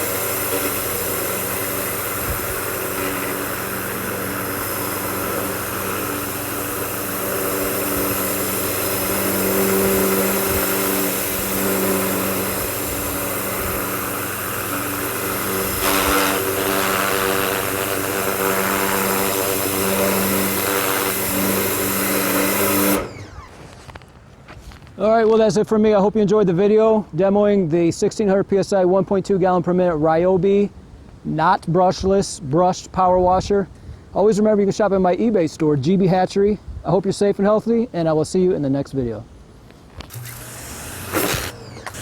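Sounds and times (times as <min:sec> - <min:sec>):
water jet hissing: 0:00.0 - 0:23.5, 0:40.1 - 0:42.0
pressure washer motor hum: 0:00.0 - 0:24.2, 0:39.9 - 0:42.0.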